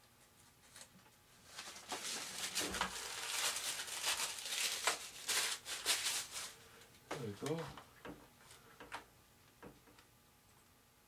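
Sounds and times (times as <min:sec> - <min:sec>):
materials rustling and crinkling: 0:00.3 - 0:07.8.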